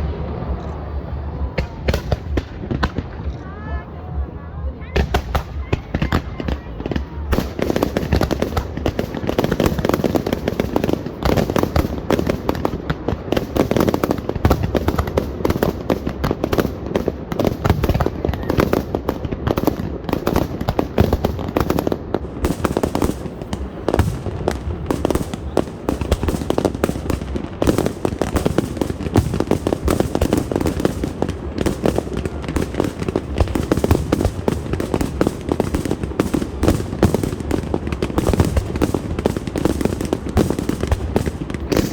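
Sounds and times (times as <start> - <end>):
fireworks bangs and crackling: 0.0 - 41.9.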